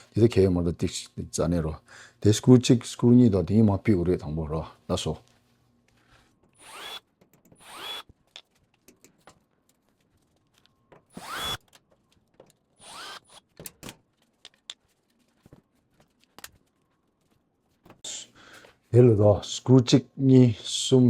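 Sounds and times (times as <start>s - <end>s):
power drill whining: 6.6s - 7.0s, 7.6s - 8.1s, 11.1s - 11.6s, 12.8s - 13.4s
screws clicking: 6.6s - 8.1s, 11.1s - 11.6s, 12.8s - 13.4s.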